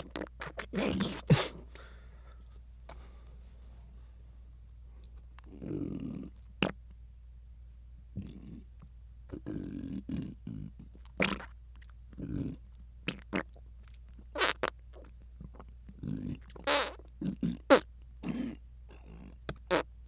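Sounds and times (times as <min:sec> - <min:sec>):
stomach rumbling: 0:00.0 - 0:01.2, 0:08.2 - 0:19.8.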